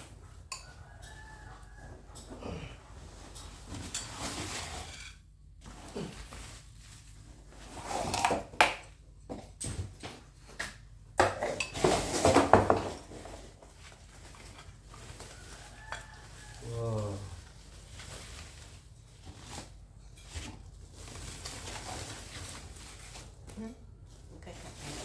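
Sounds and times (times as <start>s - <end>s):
packaging rustling: 13.7s - 23.5s.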